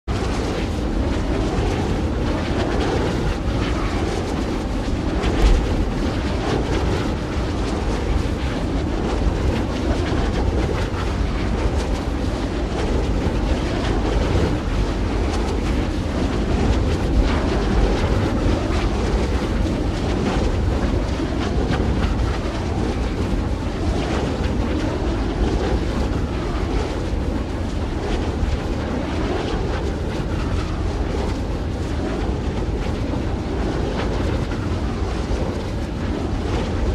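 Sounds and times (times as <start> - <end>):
wind blowing: 0.1 - 36.9.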